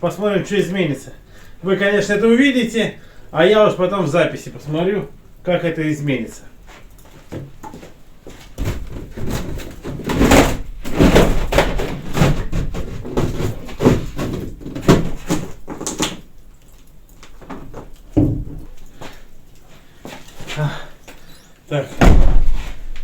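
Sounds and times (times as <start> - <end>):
knocks bumps and scraping: 6.7 - 16.3, 21.9 - 23.0.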